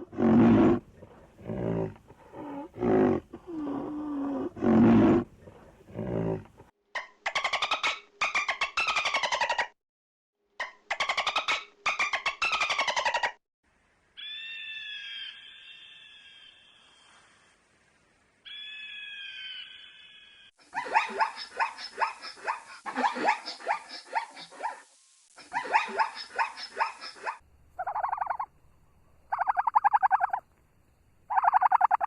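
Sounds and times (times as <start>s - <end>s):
animal pulsed calls: 25.4s - 28.5s, 29.3s - 30.4s, 31.3s - 32.0s.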